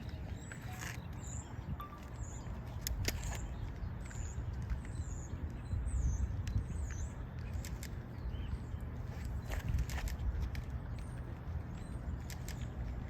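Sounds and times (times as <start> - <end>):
small bird chirping: 0.0 - 9.6.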